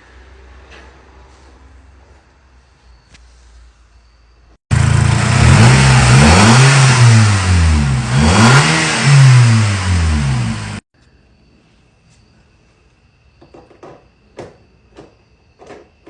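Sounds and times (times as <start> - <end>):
car engine revving: 4.7 - 10.8.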